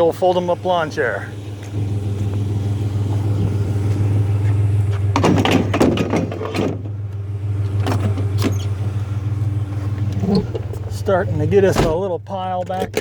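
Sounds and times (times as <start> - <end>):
pickup truck engine idling: 0.0 - 13.0
scrap clattering into truck bed: 5.0 - 7.0.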